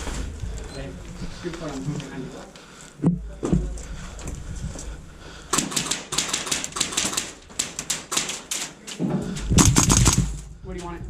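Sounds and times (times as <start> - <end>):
airsoft gunfire: 5.5 - 8.7, 9.6 - 10.4.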